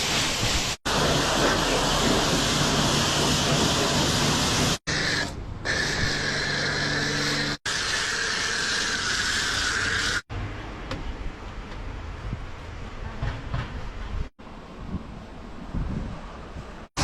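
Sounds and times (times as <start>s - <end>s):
pressure washer spraying water: 0.0s - 10.2s.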